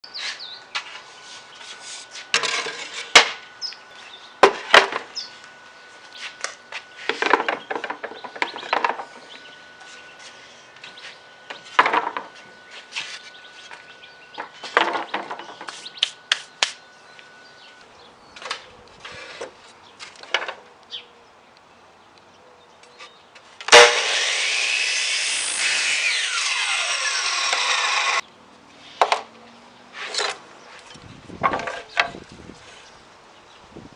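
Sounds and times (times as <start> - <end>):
loud steady noise: 23.7 - 28.2
wood scraping: 23.7 - 28.2.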